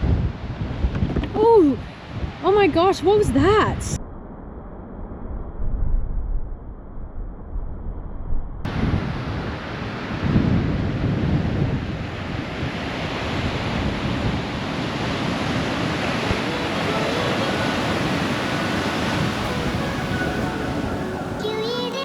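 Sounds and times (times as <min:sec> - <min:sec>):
ocean surf washing: 0:00.0 - 0:03.8, 0:08.7 - 0:22.0
wind rumbling on microphone: 0:00.0 - 0:22.0.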